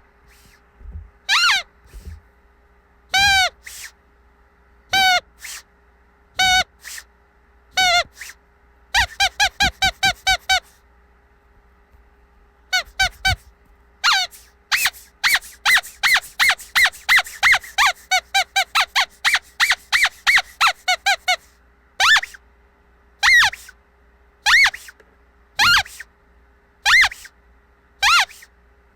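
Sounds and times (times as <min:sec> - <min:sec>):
rubber dog toy squeaking: 0:01.3 - 0:02.2, 0:03.1 - 0:04.0, 0:04.9 - 0:05.7, 0:06.4 - 0:07.1, 0:07.7 - 0:10.8, 0:12.7 - 0:22.4, 0:23.2 - 0:23.8, 0:24.4 - 0:25.0, 0:25.6 - 0:26.1, 0:26.8 - 0:27.4, 0:28.0 - 0:28.5.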